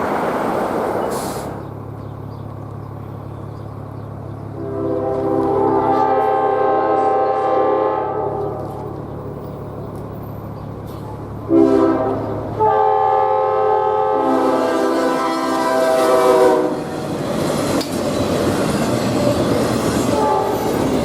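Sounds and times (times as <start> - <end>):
low train hum: 0.0 - 21.0
train air horn: 4.6 - 8.9, 11.4 - 16.9, 20.0 - 20.8.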